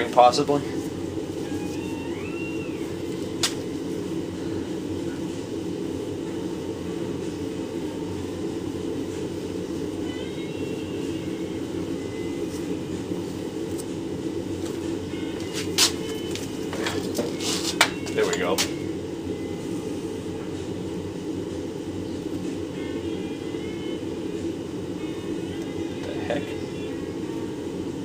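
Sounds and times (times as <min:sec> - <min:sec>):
fan blower humming: 0:00.0 - 0:28.0.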